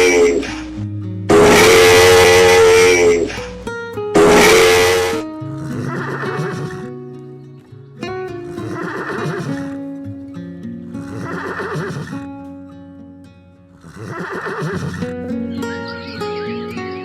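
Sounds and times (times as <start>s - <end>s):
animal call: 1.3s - 3.4s, 4.2s - 6.9s, 8.5s - 9.7s, 11.0s - 12.2s, 13.9s - 16.9s.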